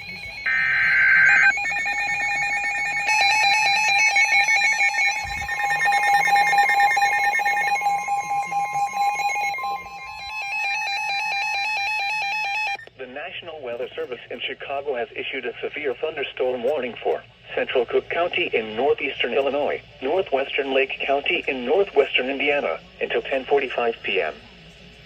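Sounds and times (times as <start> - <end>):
warbling data header: 0.0 - 12.8
rapid beeping: 0.0 - 12.9
steady high alarm tones: 0.0 - 12.9.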